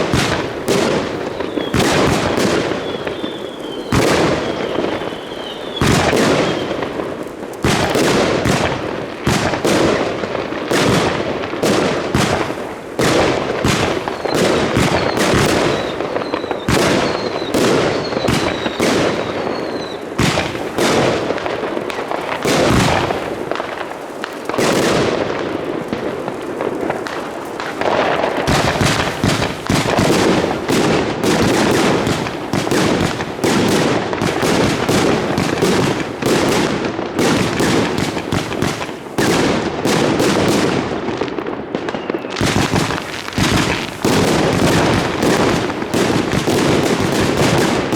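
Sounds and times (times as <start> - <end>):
firework whistles: 0.0 - 7.1, 13.6 - 21.3, 27.2 - 36.6, 41.8 - 47.9
fireworks bangs: 0.0 - 47.9.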